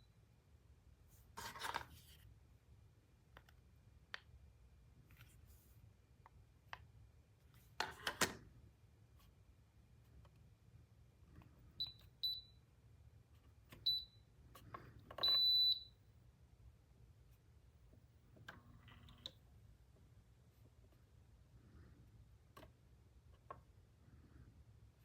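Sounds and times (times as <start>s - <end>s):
electronic fan beeps: 11.8s - 12.6s, 13.8s - 14.3s, 15.2s - 16.0s.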